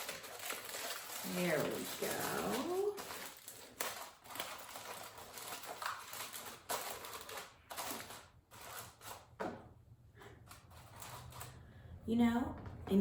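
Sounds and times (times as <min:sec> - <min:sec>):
aluminium foil crinkling: 0:00.0 - 0:09.3, 0:10.5 - 0:11.6.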